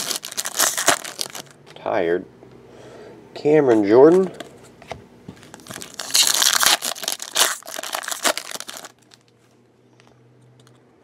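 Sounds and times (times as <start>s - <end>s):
foil wrapper tearing and crinkling: 0.0s - 1.6s, 5.5s - 9.3s.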